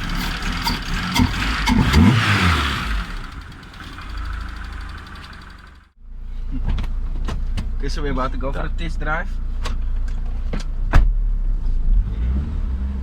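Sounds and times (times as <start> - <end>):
car engine revving and idling: 0.0 - 7.2, 7.8 - 13.0.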